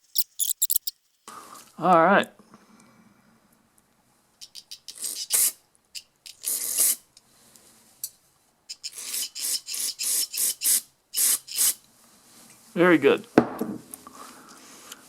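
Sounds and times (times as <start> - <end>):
thin wire scraping in holes: 0.0 - 0.9.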